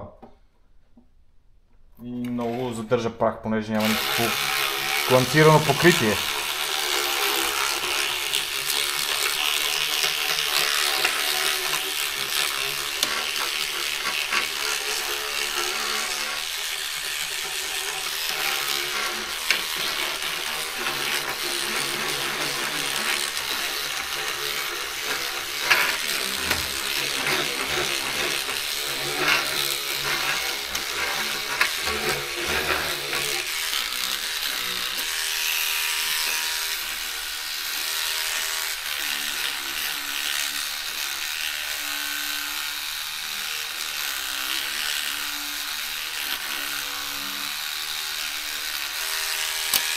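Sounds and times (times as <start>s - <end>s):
bristles rasping on plastic: 3.8s - 35.2s
electric brush motor whirring: 3.8s - 49.9s.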